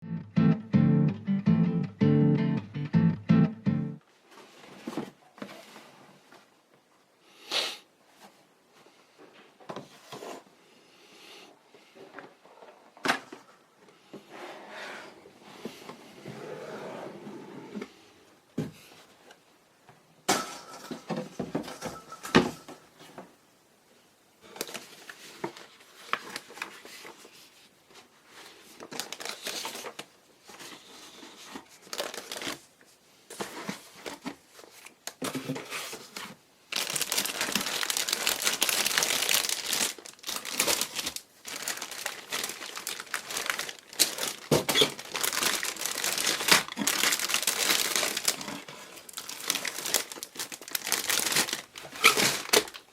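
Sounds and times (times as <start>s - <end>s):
packaging rustling and crinkling: 24.4s - 52.9s.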